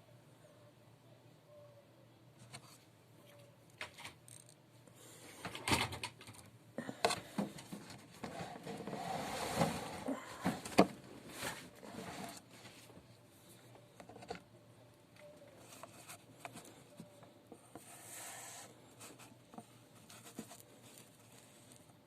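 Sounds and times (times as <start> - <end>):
small tools clicking and scraping: 3.7 - 4.6
rough hissing noise: 17.8 - 19.3.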